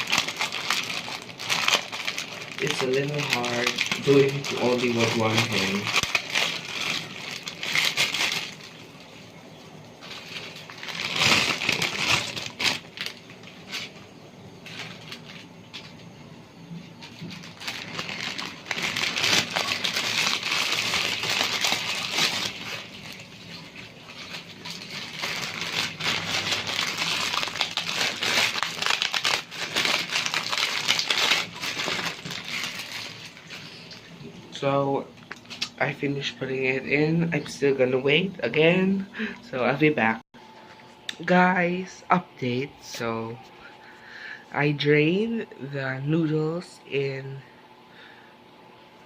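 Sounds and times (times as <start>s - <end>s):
dry noodles crackling in water: 0.0s - 16.2s, 16.8s - 37.8s.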